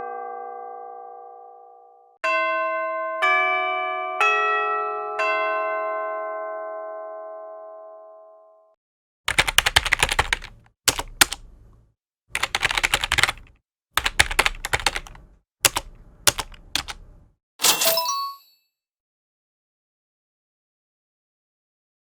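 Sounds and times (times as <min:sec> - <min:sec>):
keyboard typing clicks: 0:09.3 - 0:11.8, 0:12.4 - 0:17.3
bell tone ringing: 0:17.6 - 0:18.5.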